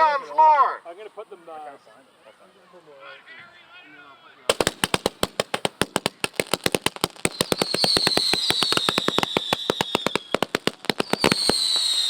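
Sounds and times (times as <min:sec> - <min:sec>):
firework cracks: 0:04.5 - 0:12.0
firework whistle falling in pitch: 0:07.3 - 0:12.0.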